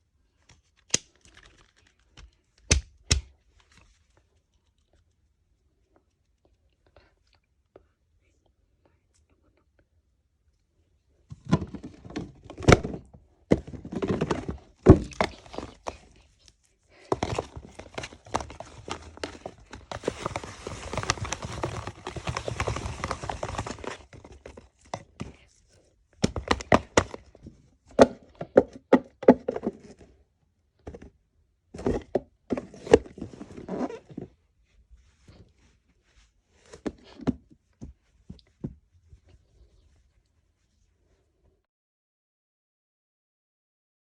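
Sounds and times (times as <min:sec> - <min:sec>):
rustling: 0:11.4 - 0:25.8.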